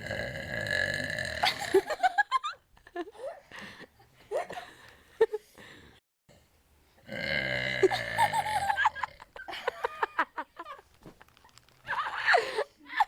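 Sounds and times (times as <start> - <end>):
girl burping: 0.0 - 1.9, 7.1 - 9.2
high-pitched laughter: 8.2 - 13.0.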